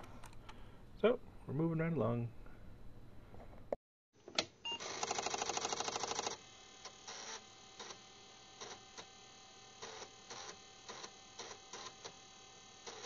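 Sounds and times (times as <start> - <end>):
faint steady hum: 0.0 - 3.8.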